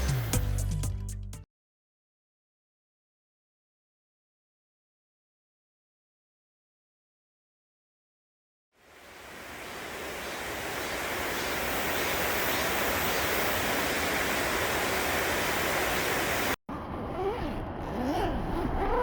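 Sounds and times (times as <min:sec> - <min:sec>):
water rushing over rocks: 0:09.0 - 0:16.6.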